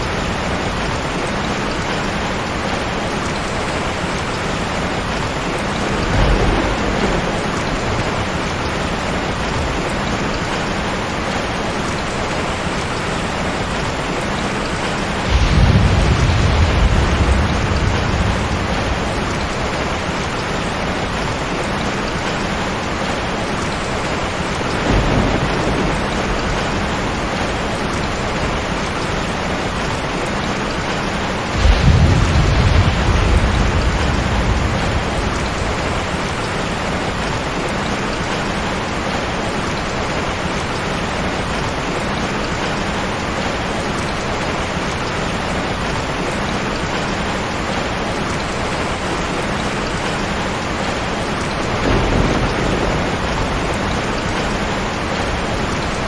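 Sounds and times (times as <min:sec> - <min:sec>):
thunder rolling: 0:00.0 - 0:38.3, 0:50.0 - 0:56.0
heavy rain falling: 0:00.0 - 0:56.0.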